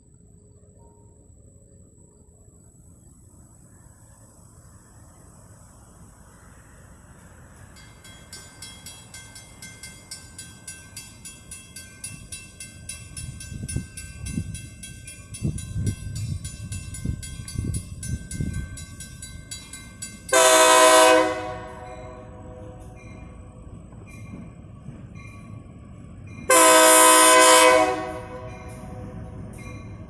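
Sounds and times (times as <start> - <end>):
thuds of rolling train: 6.3 - 30.0
locomotive bell ringing: 7.6 - 30.0
locomotive air horn blast: 20.3 - 23.0, 26.5 - 29.2.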